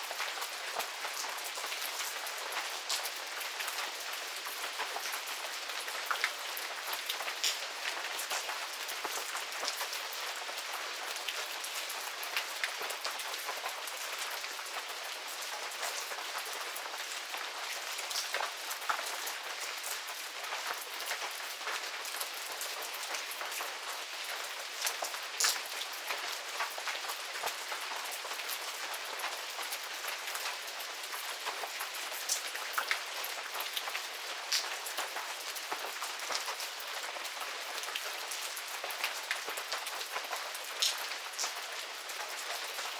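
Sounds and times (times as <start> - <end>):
steady rain hiss: 0.0 - 42.9
raindrop splats: 7.0 - 8.4.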